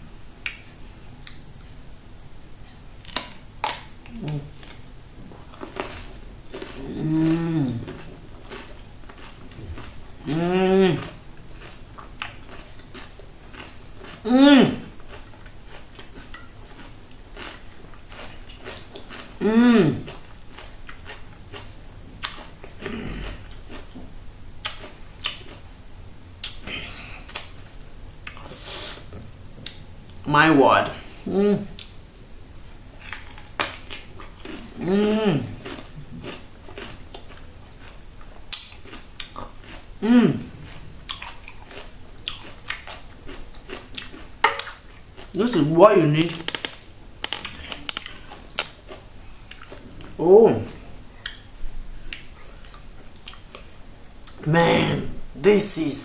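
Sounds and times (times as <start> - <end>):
cucumber crunching: 3.0 - 24.0, 24.6 - 25.6, 32.9 - 54.5
person humming mmm: 4.1 - 4.7, 6.6 - 8.1, 10.2 - 11.2, 14.2 - 14.9, 19.4 - 20.2, 22.8 - 23.6, 26.4 - 27.4, 31.1 - 31.9, 34.5 - 36.2, 40.0 - 40.7
chewing: 5.4 - 25.6, 26.4 - 29.0, 33.0 - 54.4
hissing slurp: 28.4 - 29.1.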